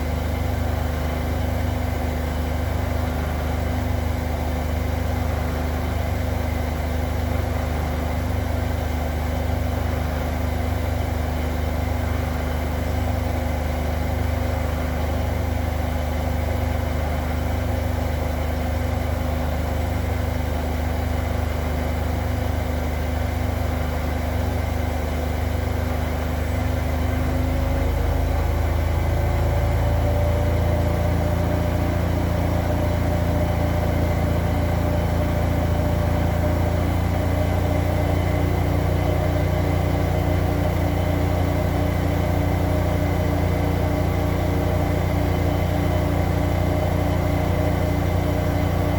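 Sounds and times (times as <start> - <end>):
washing machine spinning: 25.6 - 48.9.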